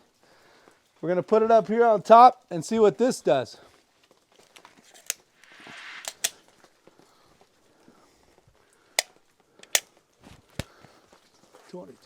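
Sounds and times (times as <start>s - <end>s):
short scraping rustle: 4.8s - 6.5s.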